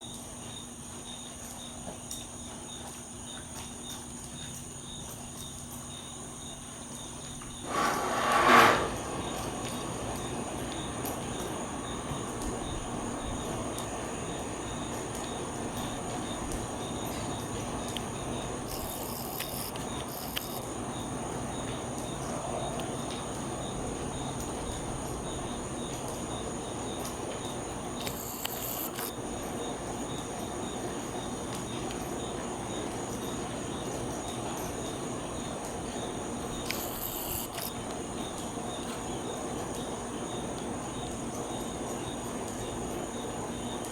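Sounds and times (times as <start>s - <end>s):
insects chirring: 0.0s - 43.9s
background hiss: 5.4s - 31.2s.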